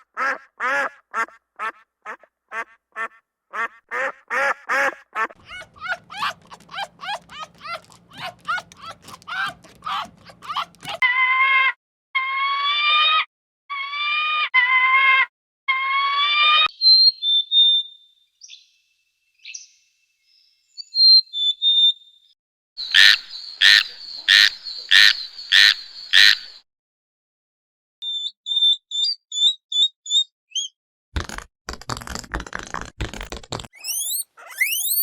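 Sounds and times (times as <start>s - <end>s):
loud animal calls: 5.2s - 11.2s, 22.9s - 26.6s, 33.8s - 35.0s
high chirps: 33.8s - 35.0s
high whistled animal notes: 33.8s - 35.0s.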